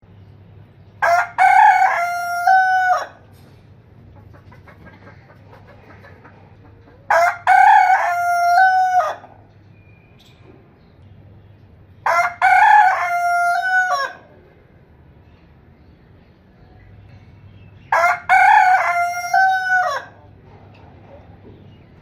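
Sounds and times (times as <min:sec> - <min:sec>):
rooster crowing: 0:01.0 - 0:03.3, 0:07.1 - 0:09.4, 0:12.0 - 0:14.4, 0:17.9 - 0:20.2.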